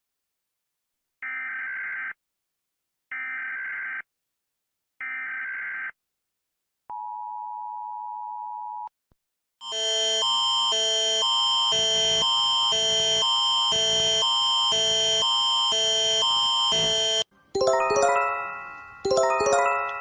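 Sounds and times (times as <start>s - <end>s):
loud electronic alarm: 1.2s - 2.2s, 3.1s - 4.1s, 5.0s - 6.0s, 9.6s - 17.3s
two-tone attention signal: 9.7s - 20.0s.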